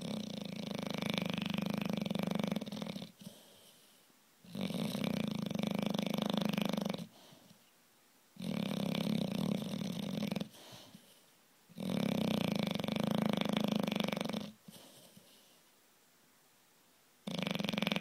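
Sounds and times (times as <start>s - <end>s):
dog snoring: 0.0s - 3.8s, 4.4s - 7.5s, 8.4s - 11.1s, 11.7s - 15.4s, 17.2s - 18.0s.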